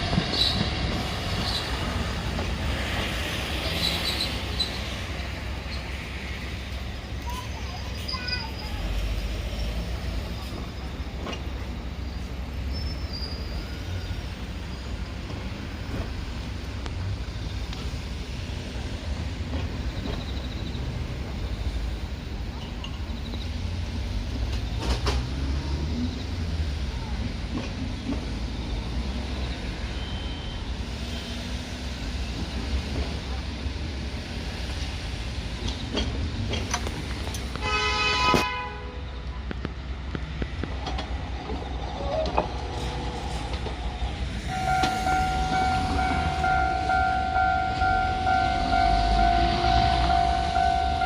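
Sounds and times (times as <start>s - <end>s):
train horn blast: 37.6s - 39.0s, 44.5s - 51.0s
level crossing warning bell: 44.5s - 51.0s.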